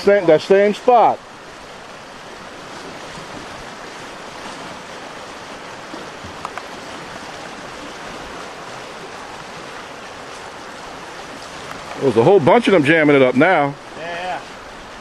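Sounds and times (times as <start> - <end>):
creek rapids rushing: 0.0 - 15.0.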